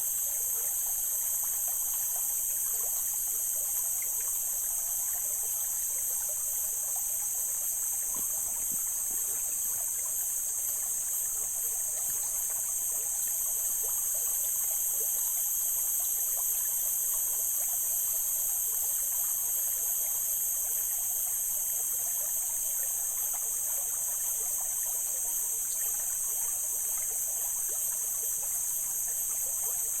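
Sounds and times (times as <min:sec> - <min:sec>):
high-pitched hiss: 0:00.0 - 0:22.6
mountain stream flowing: 0:03.0 - 0:14.2.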